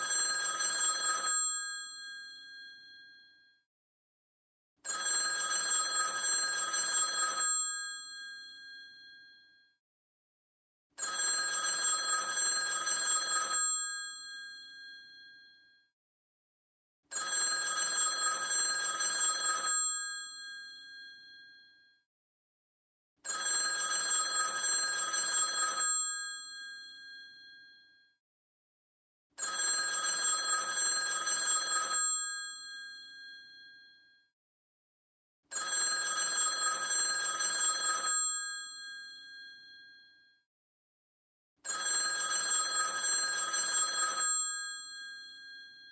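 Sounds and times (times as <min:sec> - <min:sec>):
telephone bell ringing: 0:00.0 - 0:03.4, 0:04.8 - 0:09.6, 0:11.0 - 0:15.8, 0:17.1 - 0:21.8, 0:23.2 - 0:28.0, 0:29.4 - 0:34.2, 0:35.5 - 0:40.2, 0:41.6 - 0:45.9.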